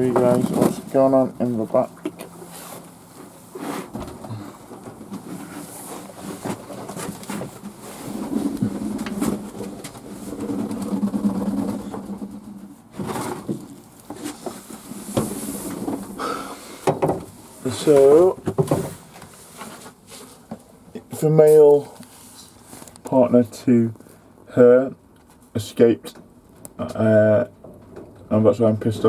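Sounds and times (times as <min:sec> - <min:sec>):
pigeons cooing: 0:07.9 - 0:12.8.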